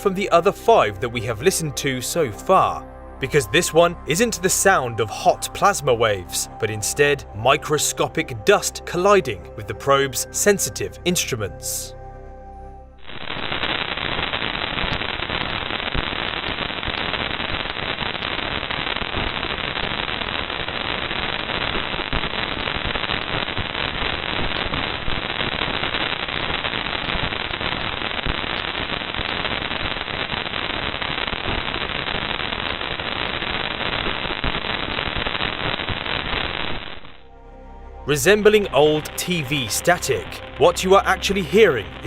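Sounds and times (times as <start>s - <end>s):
dense static-like crackle: 12.9s - 37.4s, 38.0s - 42.0s.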